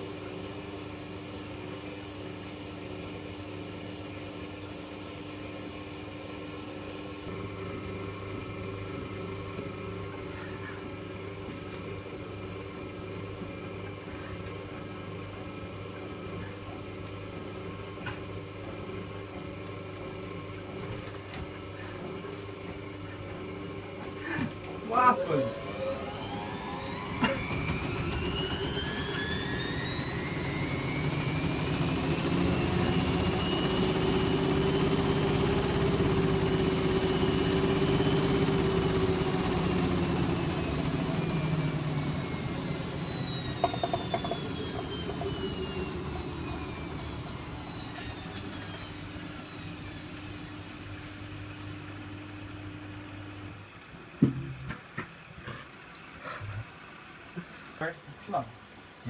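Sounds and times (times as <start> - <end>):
washing machine drum whine: 0.0 - 57.3.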